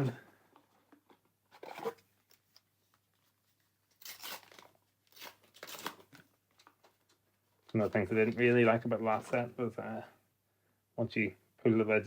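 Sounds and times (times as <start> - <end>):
foil wrapper tearing and crinkling: 4.0 - 6.1.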